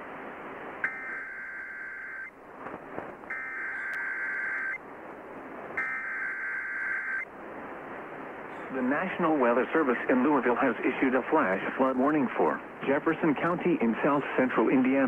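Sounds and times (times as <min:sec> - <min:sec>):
radio static: 0:00.8 - 0:04.8, 0:05.8 - 0:07.3, 0:08.7 - 0:15.0
shrill digital warbles: 0:05.8 - 0:07.3.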